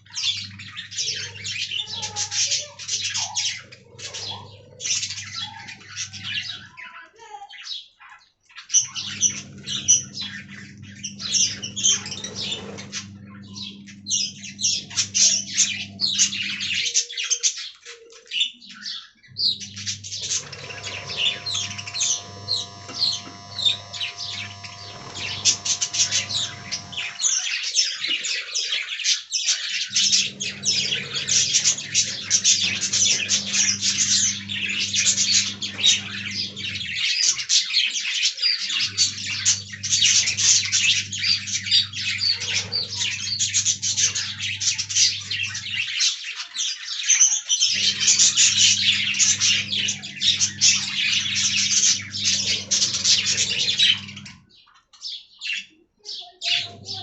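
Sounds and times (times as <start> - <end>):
budgerigars chirping: 18.8 - 55.7
low steady hum: 19.4 - 27.3.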